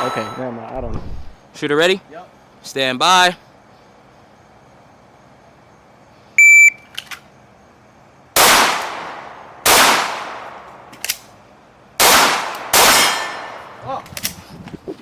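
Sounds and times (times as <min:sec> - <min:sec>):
shot timer beep: 0:06.4 - 0:06.8
pistol shots ringing: 0:08.4 - 0:10.7, 0:12.0 - 0:13.7.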